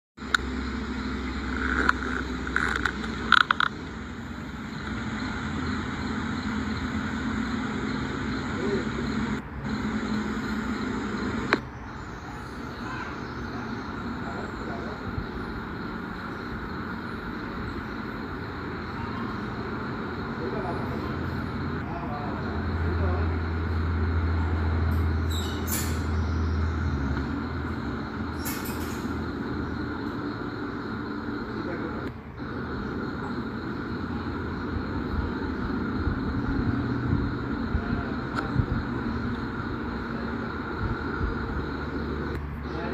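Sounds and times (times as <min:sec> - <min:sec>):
engine low rumble: 0:00.2 - 0:42.9
sharp clicks and knocks: 0:01.6 - 0:03.8.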